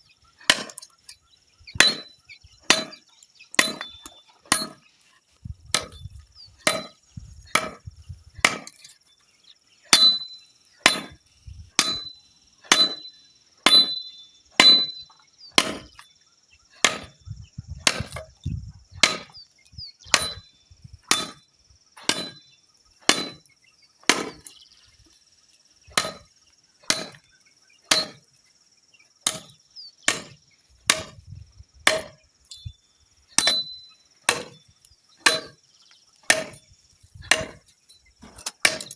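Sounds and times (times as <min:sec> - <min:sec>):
hand tool striking wood: 0:00.4 - 0:00.9, 0:01.7 - 0:03.0, 0:03.6 - 0:04.8, 0:05.7 - 0:06.0, 0:06.6 - 0:08.8, 0:09.9 - 0:11.2, 0:11.8 - 0:16.0, 0:16.8 - 0:17.2, 0:17.8 - 0:18.3, 0:19.0 - 0:19.4, 0:20.1 - 0:20.4, 0:21.1 - 0:21.4, 0:22.0 - 0:22.4, 0:23.0 - 0:24.5, 0:25.9 - 0:27.3, 0:27.9 - 0:28.3, 0:29.2 - 0:31.2, 0:31.8 - 0:32.2, 0:33.4 - 0:34.6, 0:35.2 - 0:35.6, 0:36.2 - 0:37.6, 0:38.2 - 0:38.9.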